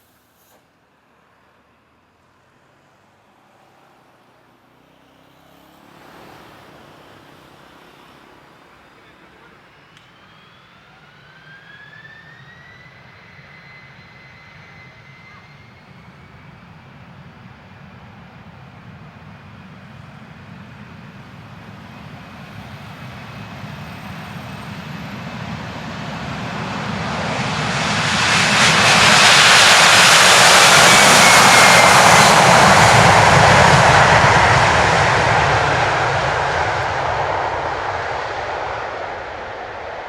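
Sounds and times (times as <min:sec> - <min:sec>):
jet engines at takeoff: 0:00.0 - 0:40.0.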